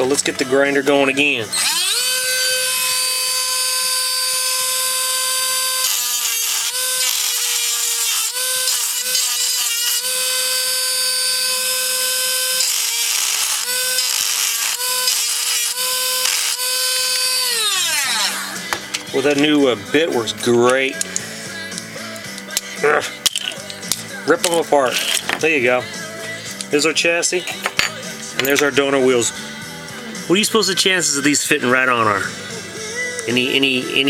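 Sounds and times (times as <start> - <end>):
rotary tool grinding metal: 1.5 - 27.0.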